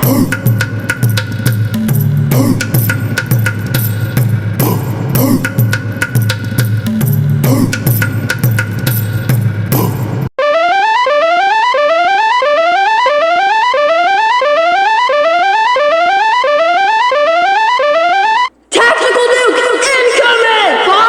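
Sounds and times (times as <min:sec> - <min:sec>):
drum-heavy music: 0:00.0 - 0:10.3
rising stepwise alarm tone: 0:10.4 - 0:18.5.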